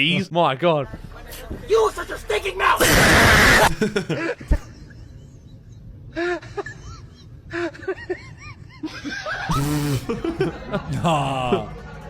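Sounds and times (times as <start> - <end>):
harsh noisy vocal burst: 2.8 - 3.8.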